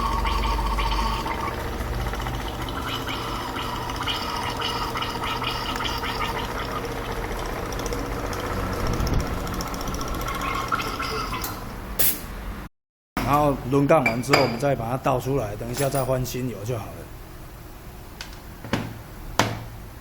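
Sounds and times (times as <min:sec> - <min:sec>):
oil gurgling: 0:00.0 - 0:11.6
air conditioning compressor running: 0:00.0 - 0:12.6.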